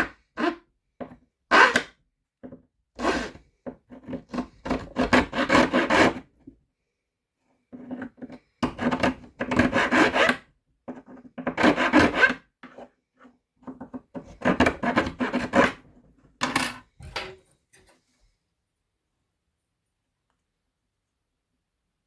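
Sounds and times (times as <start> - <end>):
hand filing strokes: 8.7 - 10.3.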